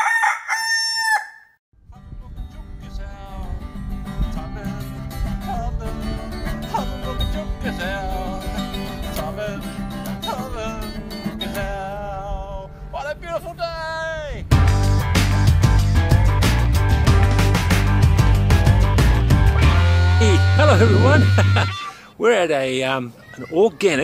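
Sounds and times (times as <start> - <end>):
rooster crowing: 0.0 - 1.6
music: 1.9 - 13.6, 14.5 - 21.7.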